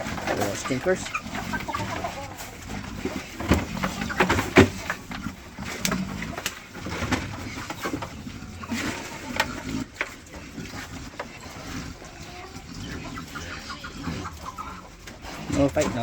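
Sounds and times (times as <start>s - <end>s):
farm animals calling: 0.0s - 16.0s.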